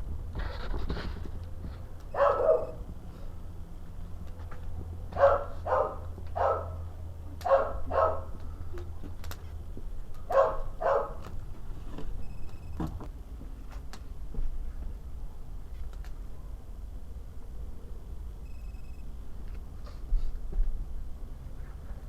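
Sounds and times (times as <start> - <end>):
dog barking: 2.1 - 2.8, 5.1 - 6.8, 7.4 - 8.4, 10.3 - 11.2.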